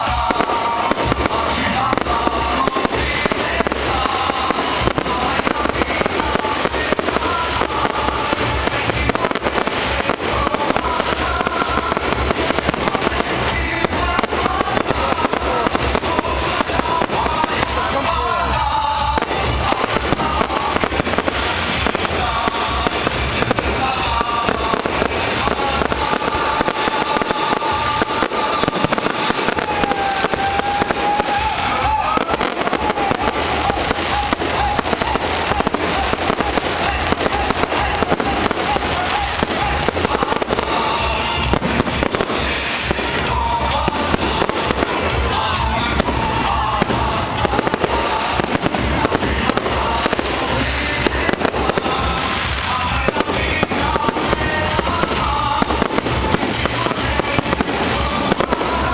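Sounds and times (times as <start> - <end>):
fireworks bangs and crackling: 0.0 - 58.9
music: 0.0 - 58.9
voices: 0.0 - 58.9.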